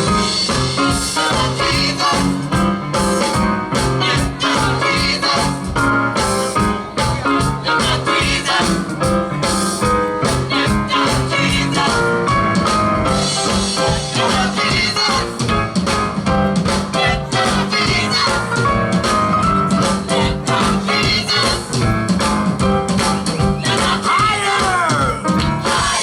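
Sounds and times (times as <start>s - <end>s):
drums keeping a steady beat: 0.0s - 26.0s
gospel band playing live: 0.0s - 26.0s.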